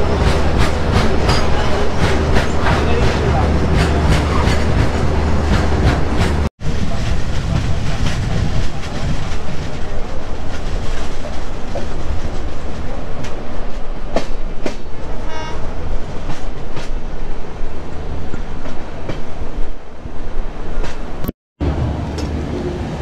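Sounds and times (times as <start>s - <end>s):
train wheels clattering over rail joints: 0.0s - 15.2s
low train rumble: 0.0s - 23.0s.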